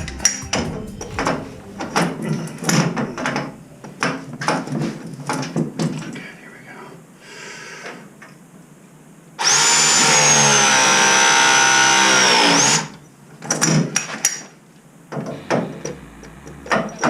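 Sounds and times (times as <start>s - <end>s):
press tool motor whine: 15.2s - 17.0s.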